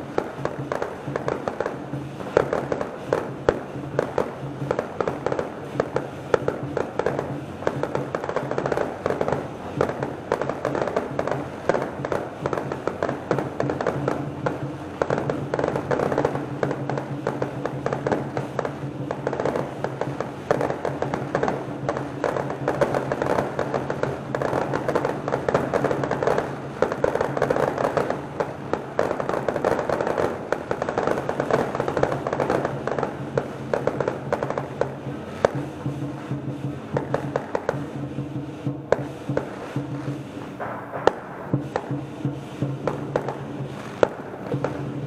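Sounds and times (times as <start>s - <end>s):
fireworks crackling: 0.0s - 45.0s.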